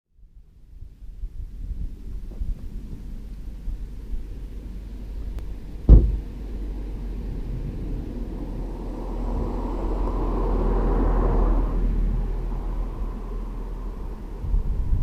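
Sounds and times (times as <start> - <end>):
diesel car engine: 0.9 - 15.0
sharp low thump: 5.8 - 6.4.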